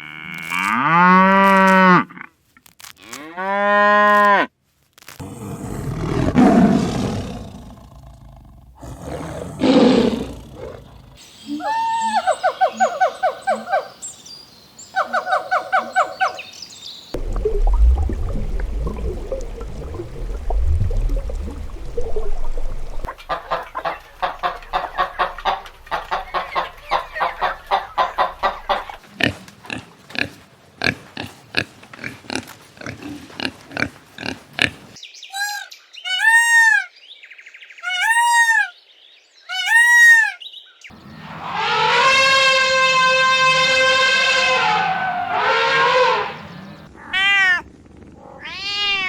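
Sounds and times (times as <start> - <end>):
pigs grunting: 5.2 - 11.2, 23.0 - 34.9
pig high squeals: 41.2 - 47.6.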